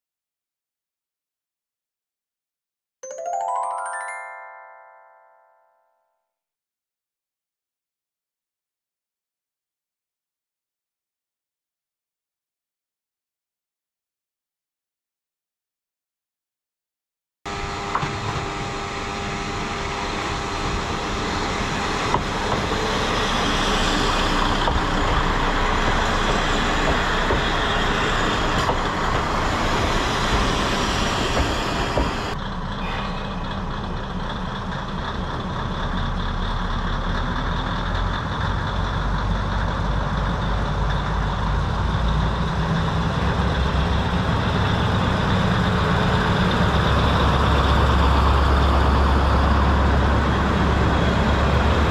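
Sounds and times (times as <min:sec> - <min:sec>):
diesel railcar engine drone: 0:17.5 - 0:51.9
wheel and track noise: 0:19.7 - 0:51.9.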